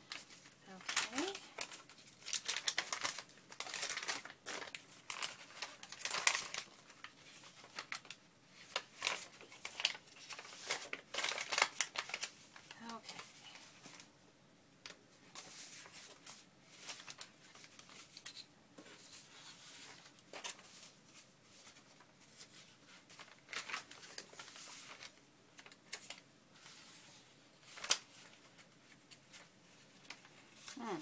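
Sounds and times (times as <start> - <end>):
paper rustling and shuffling: 0.0 - 14.1, 14.8 - 31.0.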